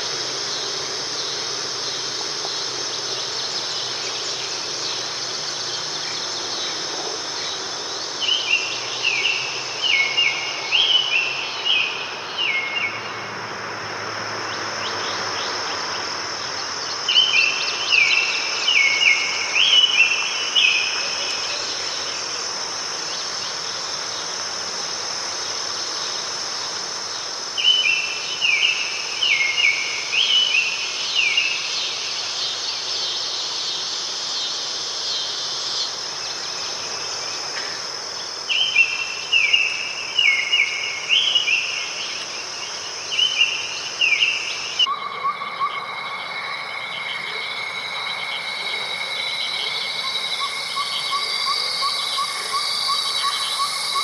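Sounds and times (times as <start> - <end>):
background hiss: 0.0 - 44.9
high-pitched insect trill: 0.0 - 54.0
songbird warbling: 38.5 - 54.0.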